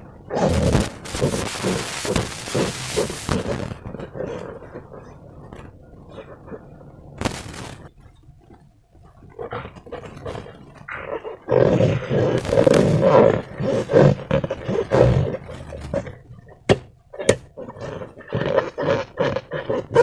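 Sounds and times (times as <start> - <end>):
rubber balloon squeaking and squelching: 0.4 - 4.2, 12.2 - 20.0.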